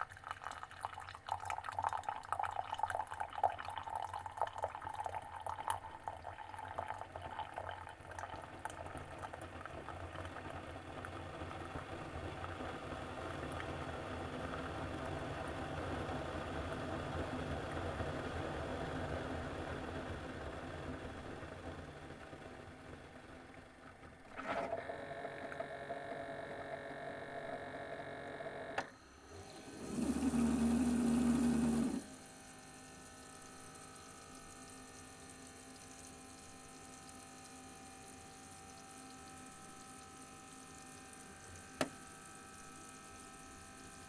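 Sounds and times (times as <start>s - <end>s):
coffee sputtering and dripping: 0.0s - 16.8s, 28.8s - 44.0s
low mechanical hum: 0.0s - 44.0s.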